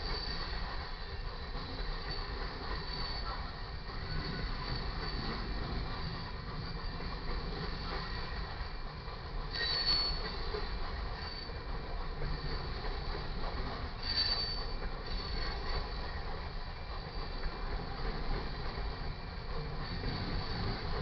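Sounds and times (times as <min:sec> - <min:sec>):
train cars rumbling by: 0:00.0 - 0:21.0
high-pitched wheel squeals: 0:01.6 - 0:05.4, 0:09.5 - 0:10.5, 0:14.0 - 0:15.7.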